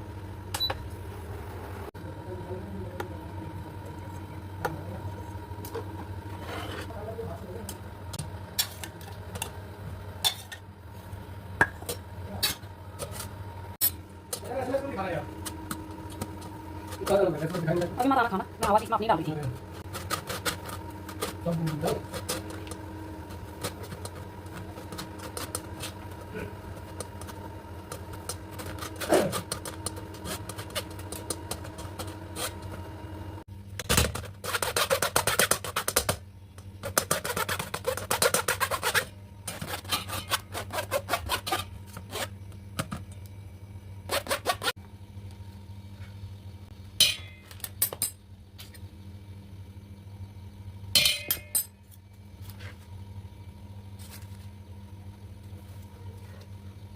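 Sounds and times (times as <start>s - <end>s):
utensils scraping cookware: 36.8s - 42.4s.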